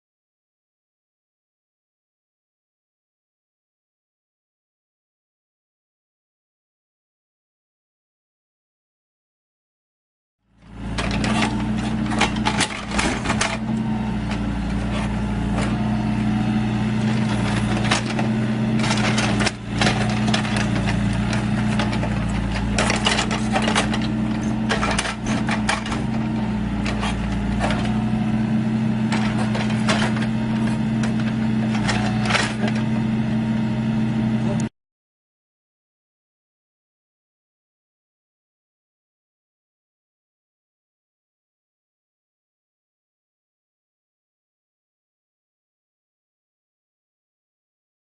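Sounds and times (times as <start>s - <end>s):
heavy machine engine running: 10.6s - 34.7s.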